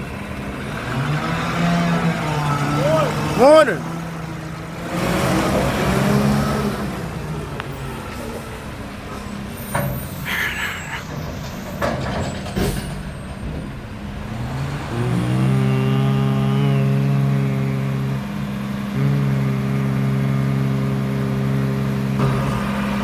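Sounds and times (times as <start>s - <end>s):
diesel truck engine: 0.0s - 23.0s
air brake hisses: 9.1s - 11.7s.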